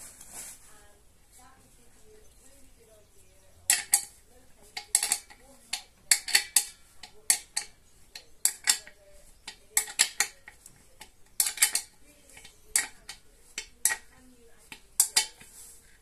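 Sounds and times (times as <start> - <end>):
metal objects clinking: 3.5 - 16.0.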